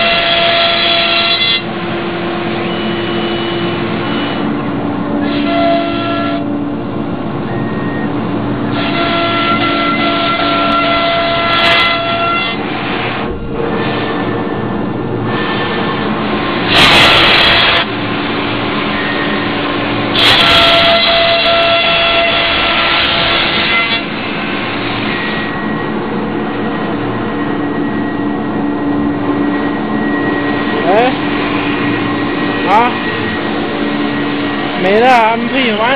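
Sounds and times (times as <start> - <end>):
cnc router machine whine: 0.0 - 35.9
dust collector running: 0.0 - 35.9
router cutting wood: 20.1 - 25.5.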